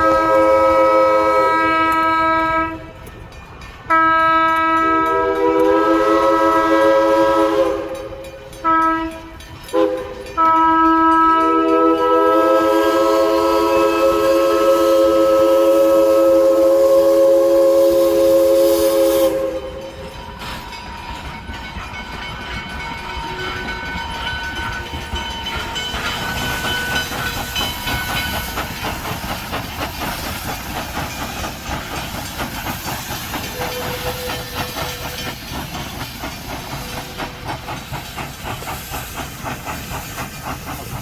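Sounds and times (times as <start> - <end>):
train horn: 0.0 - 3.0, 3.9 - 20.1, 33.5 - 35.3
train clattering over tracks: 0.0 - 41.0.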